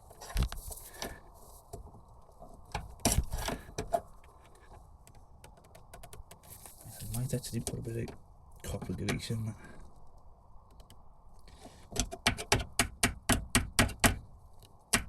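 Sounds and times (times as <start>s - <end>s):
clicks and knocks of parts handled: 11.8s - 15.0s.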